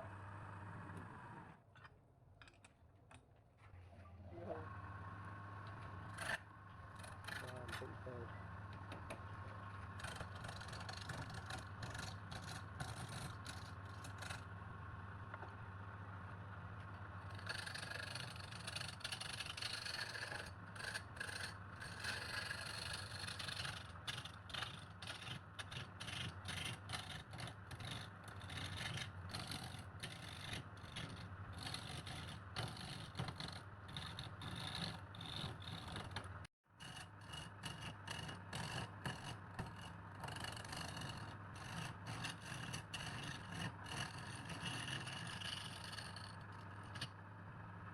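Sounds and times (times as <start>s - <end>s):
wood lathe motor hum: 4.4s - 24.6s, 26.9s - 47.9s
turning tool scraping wood: 6.0s - 8.2s, 9.0s - 14.5s, 17.2s - 47.2s.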